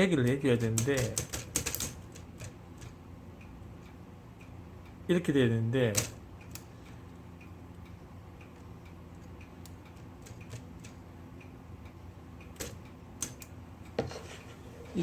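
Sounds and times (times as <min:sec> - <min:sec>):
typewriter mechanism clicks: 0:00.2 - 0:03.0, 0:05.9 - 0:06.6, 0:09.2 - 0:11.0, 0:12.5 - 0:13.5.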